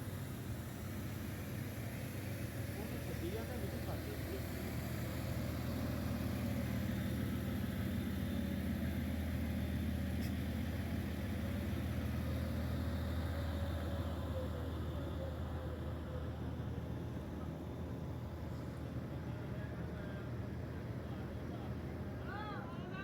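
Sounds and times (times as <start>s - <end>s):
bus engine idling: 0.0s - 23.0s.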